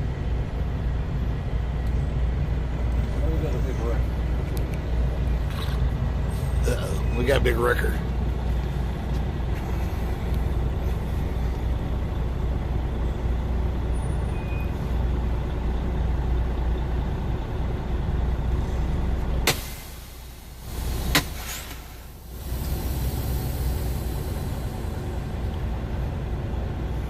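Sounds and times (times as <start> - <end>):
truck engine rumble from inside: 0.0 - 27.0.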